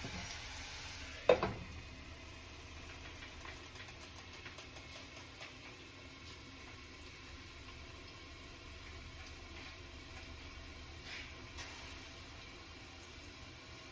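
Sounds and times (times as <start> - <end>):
potatoes frying crackle: 0.0 - 13.9
utensil clanking on pan: 1.3 - 1.7.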